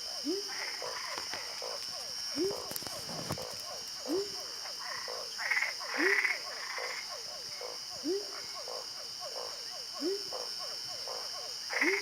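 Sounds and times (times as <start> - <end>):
high frog calls: 0.0 - 12.0.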